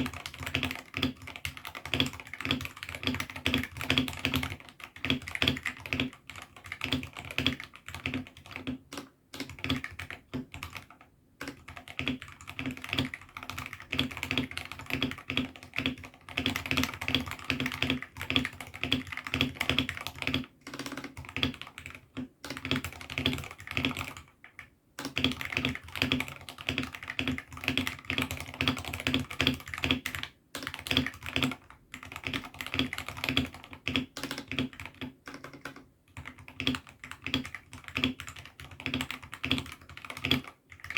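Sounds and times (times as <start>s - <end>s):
typing on mechanical keyboard: 0.0s - 40.9s.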